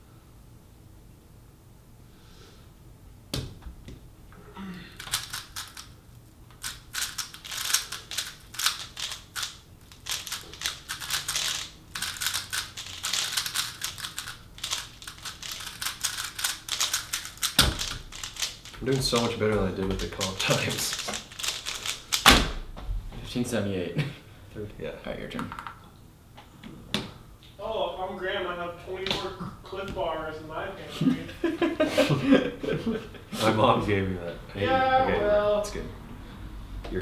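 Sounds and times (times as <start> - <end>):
rapid clatter of cube turns: 5.0 - 22.4.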